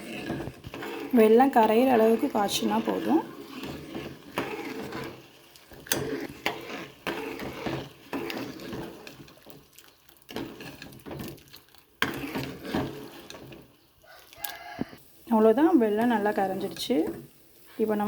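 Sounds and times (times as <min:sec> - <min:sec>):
utensil clinking and scraping pan: 0:00.0 - 0:13.8.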